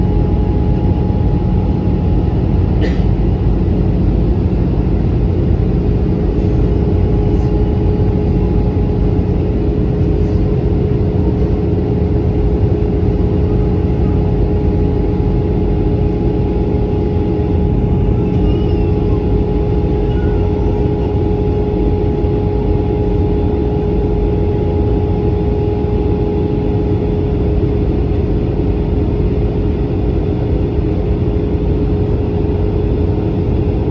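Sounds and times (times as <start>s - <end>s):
aircraft cabin engine and airflow noise: 0.0s - 33.9s
constant hum: 0.0s - 33.9s.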